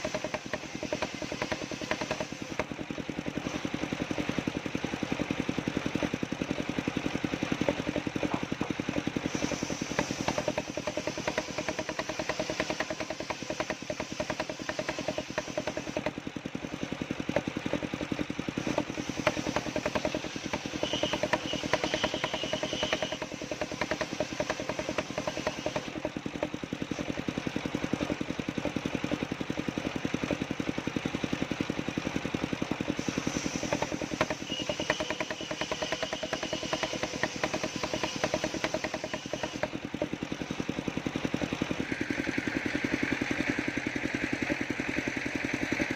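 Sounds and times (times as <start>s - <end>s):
sawmill engine chugging: 0.0s - 45.9s.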